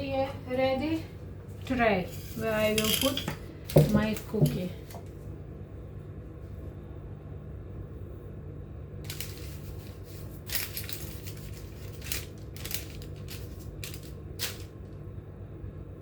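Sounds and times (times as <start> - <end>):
steady low hum: 0.0 - 16.0
cookie cutter scraping dough: 1.7 - 4.7.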